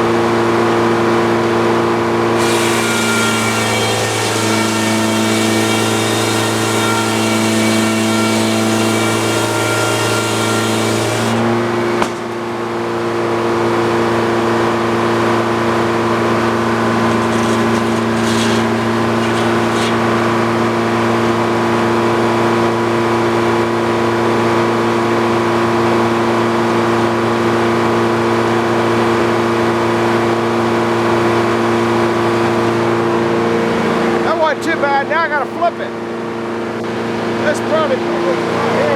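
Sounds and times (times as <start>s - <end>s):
sawmill engine running: 0.0s - 24.1s
saw blade hissing in cut: 2.4s - 12.4s, 16.7s - 20.6s.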